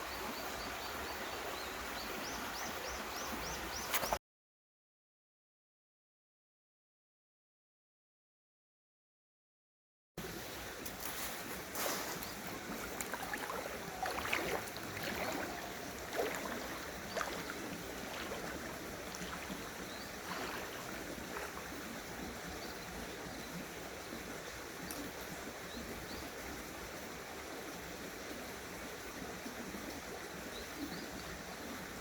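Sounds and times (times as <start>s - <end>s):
stream water running over rocks: 10.2s - 32.0s.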